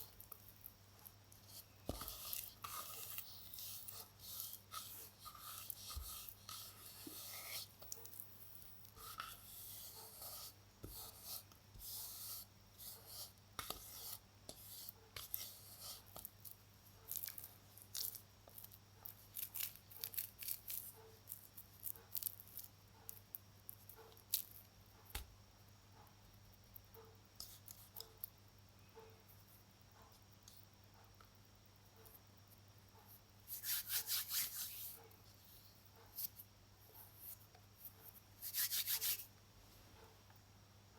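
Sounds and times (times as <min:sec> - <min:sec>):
baking soda crackling and crunching: 0:00.0 - 0:24.7, 0:33.5 - 0:35.0, 0:38.4 - 0:39.3.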